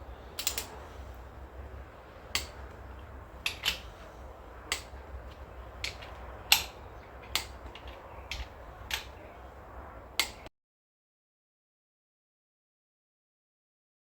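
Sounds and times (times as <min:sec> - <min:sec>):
low steady hum: 0:00.0 - 0:10.5
torque wrench clicking: 0:00.4 - 0:00.8, 0:02.3 - 0:02.8, 0:03.4 - 0:04.0, 0:04.6 - 0:09.2, 0:10.2 - 0:10.5.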